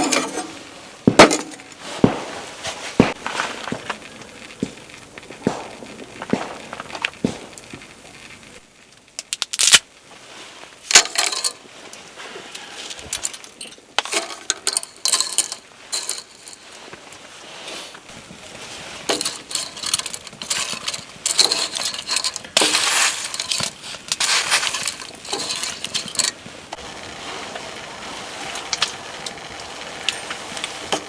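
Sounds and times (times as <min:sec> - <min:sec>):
small hard objects clinking: 0:00.0 - 0:09.8, 0:10.8 - 0:11.7, 0:12.5 - 0:17.0, 0:18.1 - 0:31.0
sharp clicks: 0:03.0 - 0:09.8.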